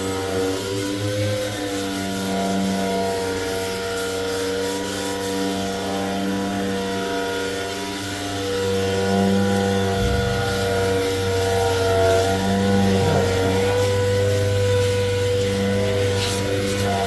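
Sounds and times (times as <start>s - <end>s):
engine running with low hum: 9.6s - 17.0s.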